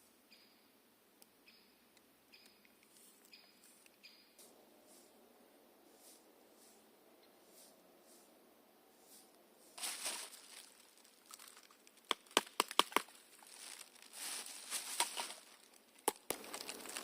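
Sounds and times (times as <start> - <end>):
footsteps through forest litter: 2.9 - 3.8, 4.4 - 5.2, 5.9 - 17.0.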